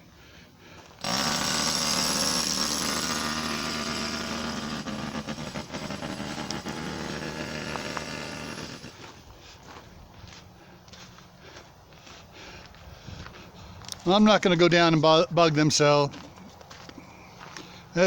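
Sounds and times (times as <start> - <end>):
power tool running: 0.8 - 9.3.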